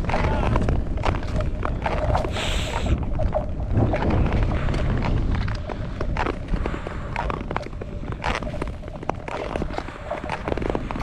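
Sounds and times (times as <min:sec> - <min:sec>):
low rumble: 0:00.0 - 0:11.0
skates gliding over ice: 0:00.0 - 0:11.0
ice clicking and cracking: 0:02.9 - 0:11.0.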